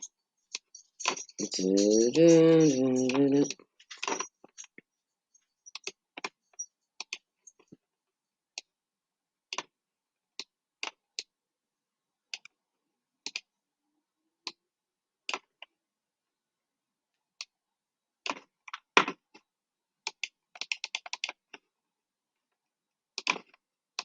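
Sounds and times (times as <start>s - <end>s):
computer mouse clicking: 5.7s - 6.4s, 7.0s - 7.2s, 13.2s - 13.5s, 20.1s - 21.6s, 23.2s - 23.6s.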